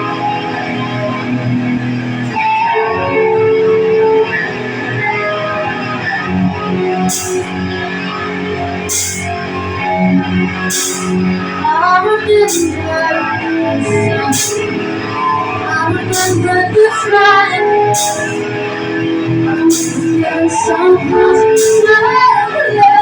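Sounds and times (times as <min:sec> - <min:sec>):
band playing slow song: 0:00.0 - 0:23.0
cymbal strokes: 0:07.0 - 0:07.6, 0:08.9 - 0:09.4, 0:10.6 - 0:11.4, 0:12.5 - 0:13.0, 0:14.3 - 0:15.2, 0:16.0 - 0:17.2, 0:17.8 - 0:18.6, 0:19.7 - 0:20.2, 0:21.5 - 0:22.1.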